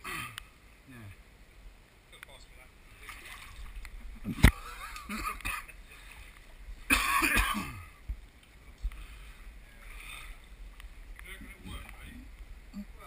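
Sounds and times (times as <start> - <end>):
pond water sloshing and splashing: 2.8 - 5.1.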